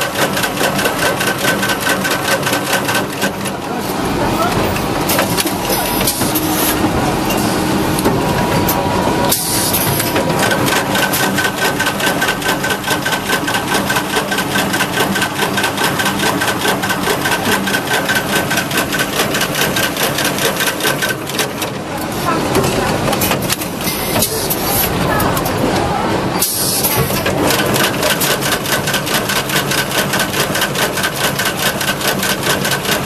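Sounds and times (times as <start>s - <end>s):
fast even clatter: 0.0s - 3.8s, 9.8s - 21.8s, 26.8s - 33.0s
machinery humming: 0.0s - 33.0s.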